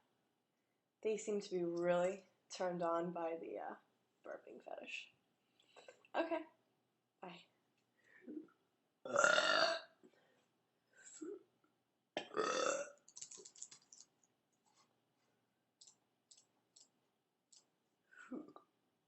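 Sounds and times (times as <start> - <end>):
woman burping: 9.1 - 10.0, 12.2 - 13.0
computer keyboard clicks: 13.1 - 14.1.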